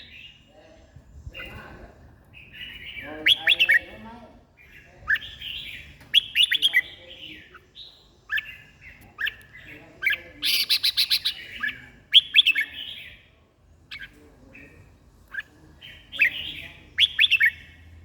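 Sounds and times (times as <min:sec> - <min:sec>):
bird chirping: 0:00.0 - 0:18.0.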